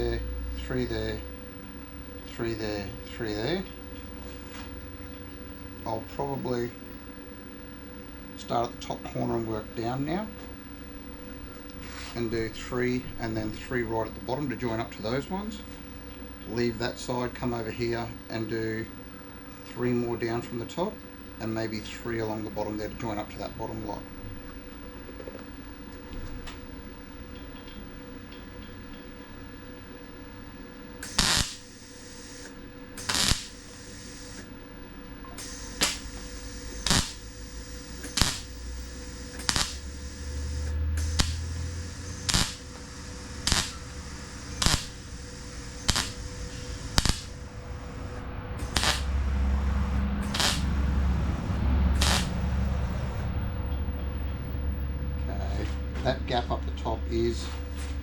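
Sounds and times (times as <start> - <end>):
welder arc crackle: 0.0 - 4.4, 8.4 - 15.6, 31.0 - 54.3
low hum: 30.1 - 58.0.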